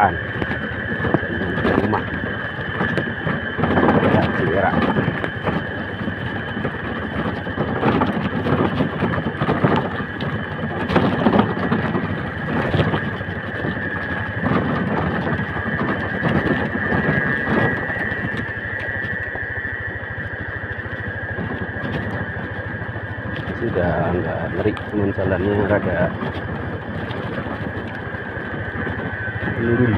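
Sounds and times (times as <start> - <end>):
motorcycle engine running: 0.0 - 29.9
steady high tone: 29.1 - 29.9.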